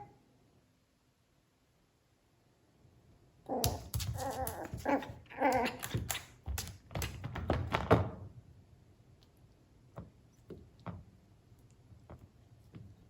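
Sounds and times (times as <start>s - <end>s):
puppy barking and whining: 3.5s - 6.3s.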